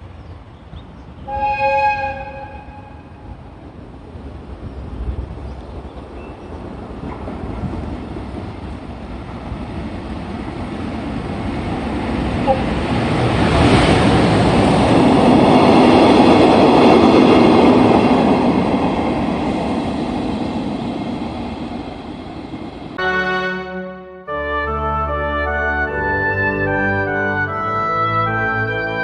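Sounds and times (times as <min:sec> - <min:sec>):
train wheels rumbling on rails: 0:00.0 - 0:23.0.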